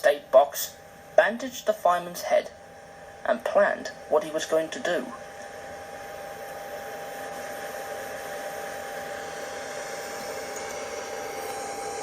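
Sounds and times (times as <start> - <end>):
thin steady tone: 8.7 - 12.0.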